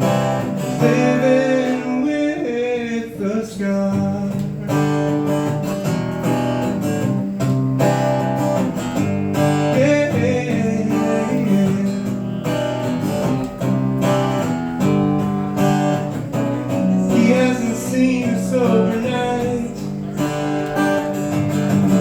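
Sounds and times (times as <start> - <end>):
acoustic guitar strumming chords: 0.0 - 22.0
person singing: 0.5 - 4.8, 9.6 - 12.6, 16.3 - 21.1.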